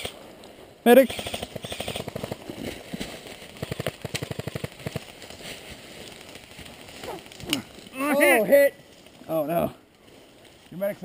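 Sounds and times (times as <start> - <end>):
airsoft guns full-auto bursts: 1.1 - 2.4.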